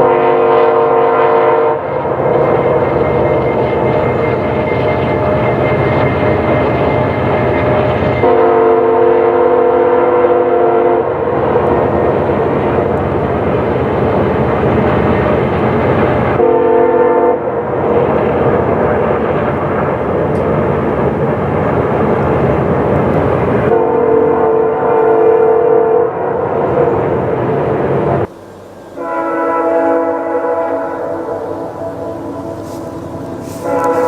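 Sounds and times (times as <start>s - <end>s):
locomotive horn chord: 0.0s - 2.5s, 8.2s - 11.3s, 16.4s - 17.6s, 23.7s - 26.4s, 28.3s - 34.0s
train rumble: 0.0s - 34.0s.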